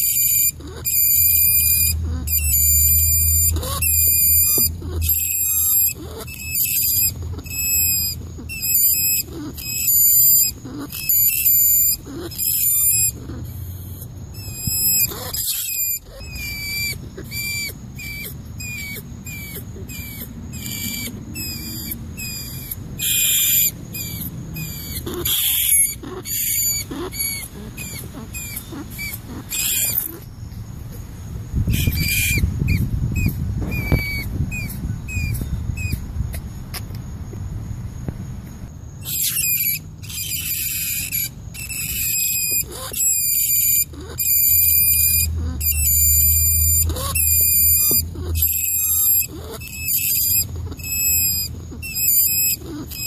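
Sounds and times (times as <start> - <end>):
rat squeaking: 0.0 - 30.6, 31.6 - 36.5, 39.0 - 53.0.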